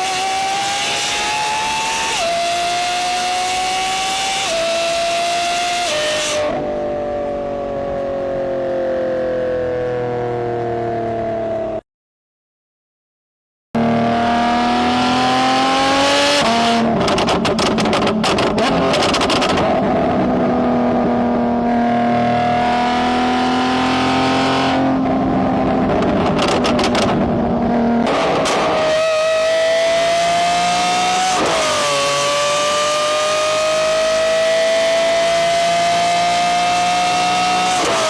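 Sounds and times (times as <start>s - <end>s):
car engine revving hard: 0.0s - 6.6s, 13.8s - 21.0s, 21.6s - 38.0s.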